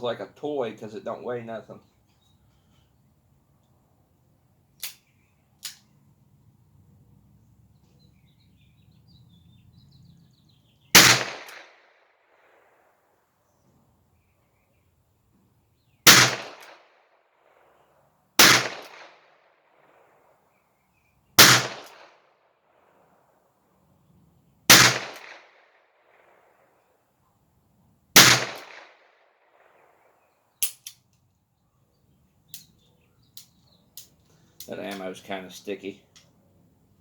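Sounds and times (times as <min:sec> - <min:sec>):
small sharp clicks: 0:04.8 - 0:06.0, 0:30.6 - 0:31.4, 0:32.5 - 0:35.1.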